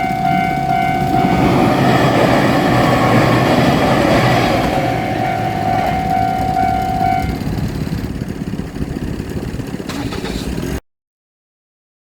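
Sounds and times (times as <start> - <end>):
steady high tone: 0.0 - 9.2
diesel train passing: 0.0 - 10.8.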